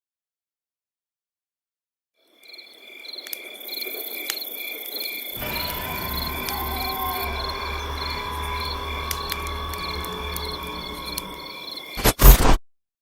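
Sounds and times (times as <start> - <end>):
crickets chirping: 2.2 - 12.0.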